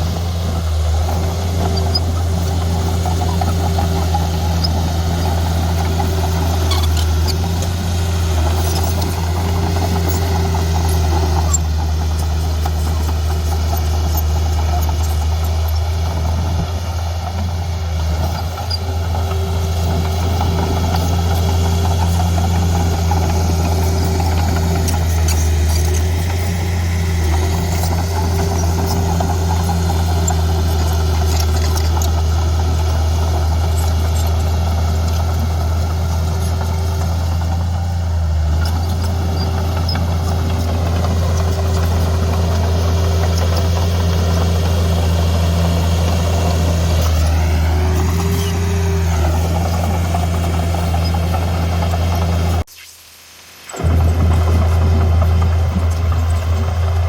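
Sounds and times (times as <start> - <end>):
heavy diesel engine running: 0.0 - 52.7, 53.7 - 57.0.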